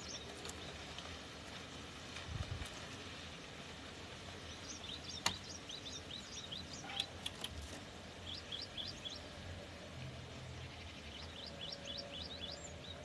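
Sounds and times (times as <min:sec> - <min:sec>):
bird singing high sweeping notes: 0:08.2 - 0:09.3, 0:10.6 - 0:13.0.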